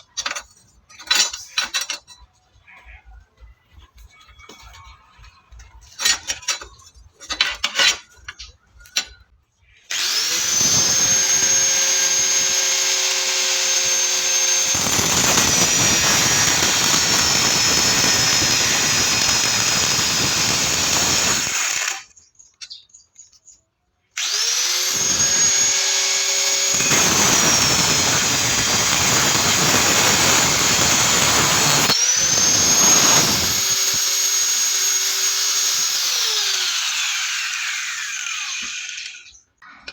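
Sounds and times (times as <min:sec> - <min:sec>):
angle grinder grinding steel: 0:09.9 - 0:22.1, 0:24.2 - 0:39.4.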